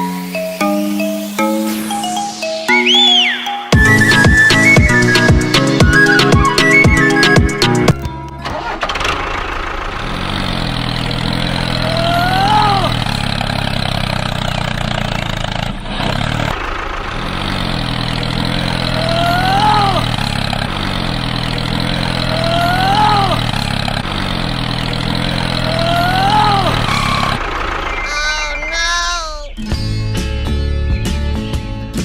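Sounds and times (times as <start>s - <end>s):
short rising whine: 0.0s - 6.5s
model bulldozer engine drone: 8.4s - 28.8s.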